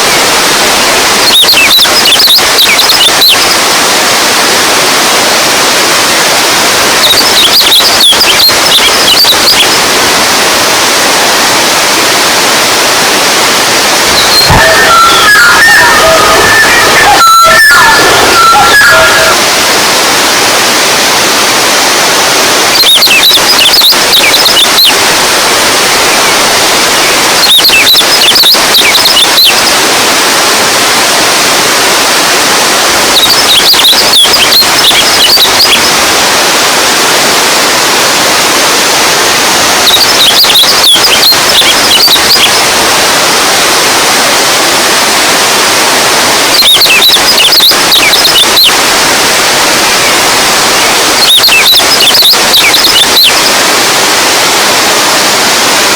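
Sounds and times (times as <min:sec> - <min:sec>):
stream water rushing: 0:00.0 - 0:55.9
high twittering chirps: 0:14.1 - 0:19.8.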